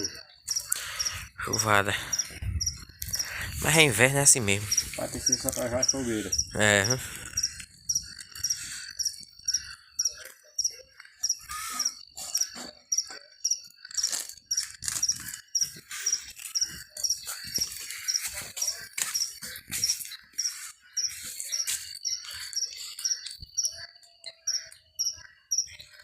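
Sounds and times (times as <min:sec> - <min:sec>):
high insect chirp: 0:00.0 - 0:26.0
insects buzzing: 0:00.0 - 0:26.0
sharp crackles and clicks: 0:06.7 - 0:23.6.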